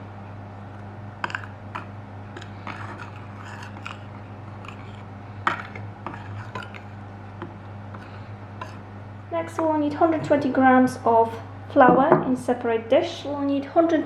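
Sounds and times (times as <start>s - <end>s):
steady low hum: 0.0s - 14.0s
utensil scraping and tapping bowl: 1.2s - 8.8s.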